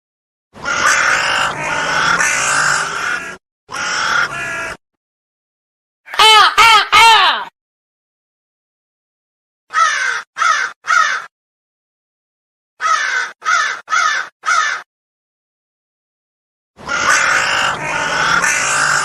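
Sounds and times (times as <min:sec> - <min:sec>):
crow cawing: 0:00.6 - 0:04.8, 0:09.7 - 0:11.3, 0:12.8 - 0:14.9, 0:16.8 - 0:19.0.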